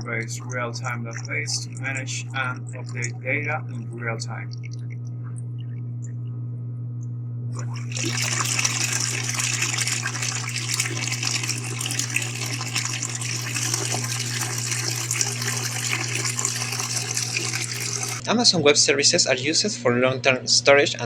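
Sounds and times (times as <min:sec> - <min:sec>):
water running from a tap: 0:00.0 - 0:05.8, 0:07.6 - 0:18.2
low hum: 0:00.0 - 0:21.0.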